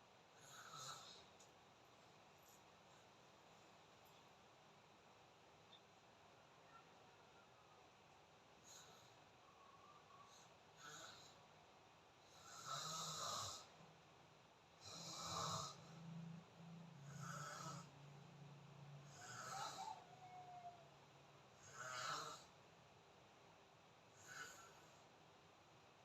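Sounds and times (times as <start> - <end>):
person snoring faintly: 0.4 - 1.4, 9.8 - 11.4, 12.2 - 13.8, 14.8 - 18.0, 18.9 - 20.9, 21.6 - 22.6, 24.1 - 25.1.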